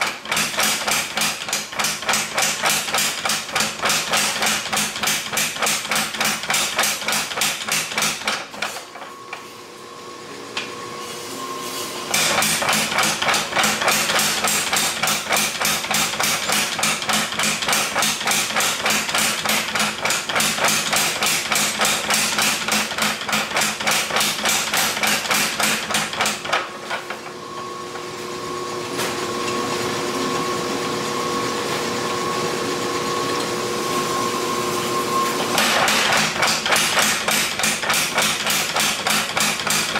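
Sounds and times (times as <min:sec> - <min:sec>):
hammer forging on anvil: 0:12.1 - 0:26.6, 0:35.6 - 0:39.9.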